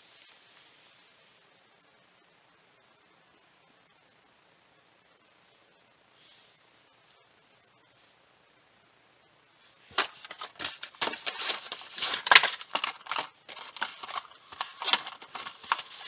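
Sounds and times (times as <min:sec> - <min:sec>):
rapid irregular clicking and crackling: 0:09.9 - 0:16.0.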